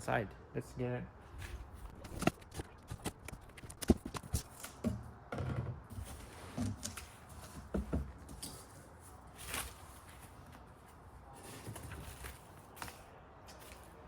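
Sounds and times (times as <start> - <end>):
scraping and rustling: 5.8 - 14.0.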